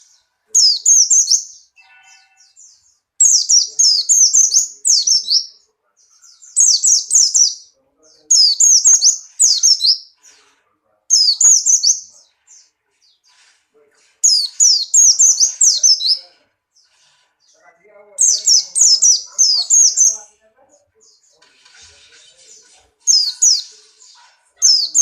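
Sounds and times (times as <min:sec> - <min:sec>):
bird singing high chirps: 0:00.0 - 0:10.2, 0:11.1 - 0:13.3, 0:14.2 - 0:16.3, 0:18.2 - 0:20.2, 0:23.1 - 0:25.0.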